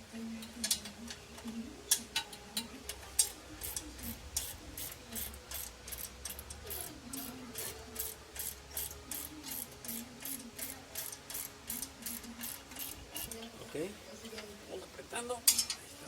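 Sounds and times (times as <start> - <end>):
ratchet wrench clicking: 1.9 - 13.4.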